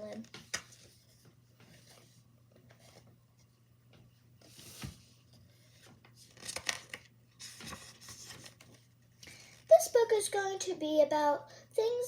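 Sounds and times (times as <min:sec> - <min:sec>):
paper rustling: 0:04.4 - 0:09.4.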